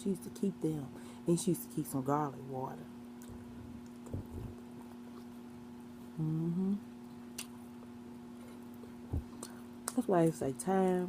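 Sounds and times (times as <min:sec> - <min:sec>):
low electrical hum: 0:00.0 - 0:11.0
woman humming mm: 0:06.1 - 0:06.9.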